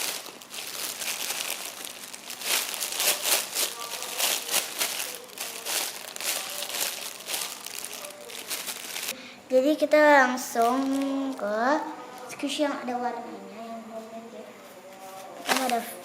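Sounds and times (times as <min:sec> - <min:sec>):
plastic wrapping crinkling: 0:00.0 - 0:09.2, 0:10.5 - 0:11.5, 0:15.1 - 0:16.0.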